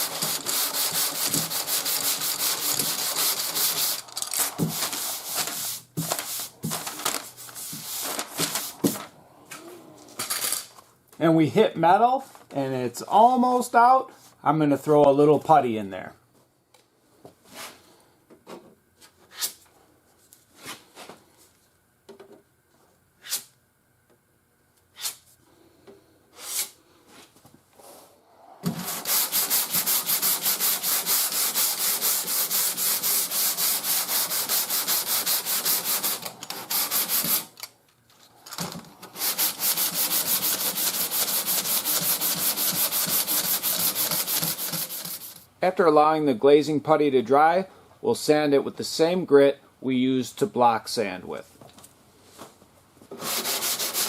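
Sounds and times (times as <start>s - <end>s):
sandpaper block sanding: 0.0s - 6.5s, 28.6s - 37.5s, 39.2s - 45.4s, 53.2s - 54.0s.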